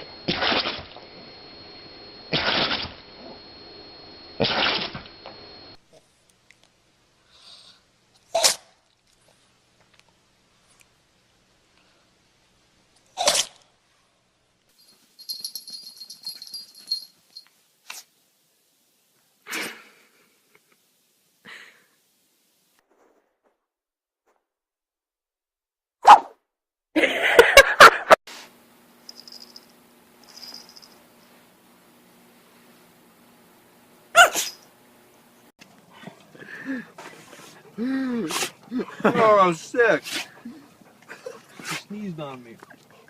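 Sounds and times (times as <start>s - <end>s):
faint high whine: 0.0s - 5.8s, 28.6s - 35.5s
puppy sneezing: 2.3s - 2.9s, 4.4s - 5.0s, 8.3s - 8.8s, 13.2s - 13.6s, 34.2s - 34.6s, 37.1s - 38.6s, 40.0s - 40.6s, 41.2s - 41.9s.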